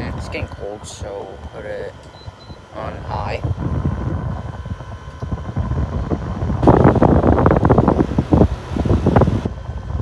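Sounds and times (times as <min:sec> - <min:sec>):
air conditioner fan running: 0:00.0 - 0:10.0
wind buffeting microphone: 0:02.3 - 0:10.0.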